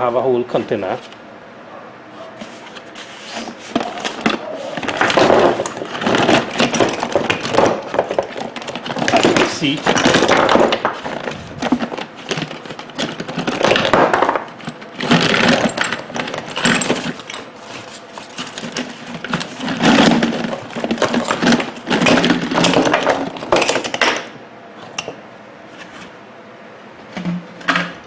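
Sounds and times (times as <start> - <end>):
small motors clattering together: 3.2 - 24.2.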